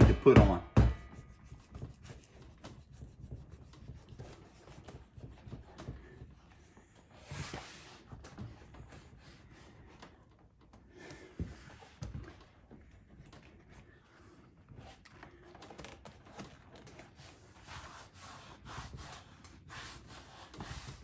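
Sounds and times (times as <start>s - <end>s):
hands rubbing damp leather: 1.1s - 10.3s.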